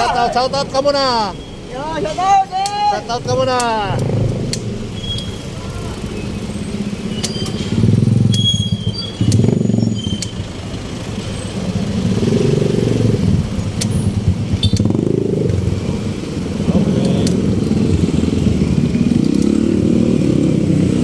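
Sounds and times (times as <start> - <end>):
motorcycle and vehicle engines: 0.0 - 21.0
sharp clicks: 3.6 - 5.4, 9.2 - 9.5, 17.0 - 17.4.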